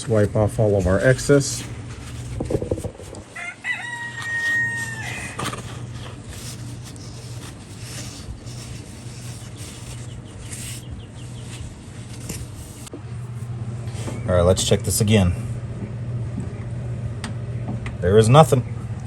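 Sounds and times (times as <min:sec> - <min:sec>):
rooster crowing: 0:03.2 - 0:06.5.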